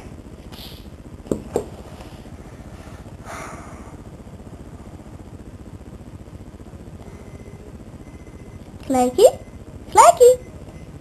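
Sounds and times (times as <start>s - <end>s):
short hiss: 0.5s - 0.9s.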